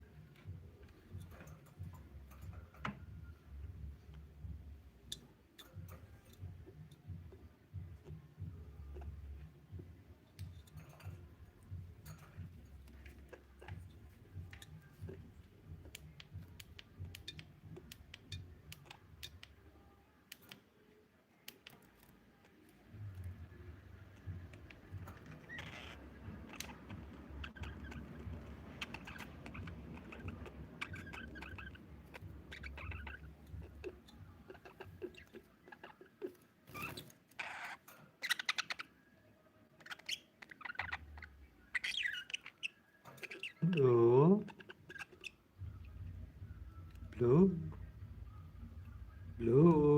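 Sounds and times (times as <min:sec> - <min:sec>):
soft low rumble: 0:00.0 - 0:05.1, 0:22.9 - 0:34.6, 0:45.6 - 0:49.9
budgies clicking and ticking: 0:00.0 - 0:20.7, 0:21.4 - 0:39.1, 0:39.7 - 0:49.9.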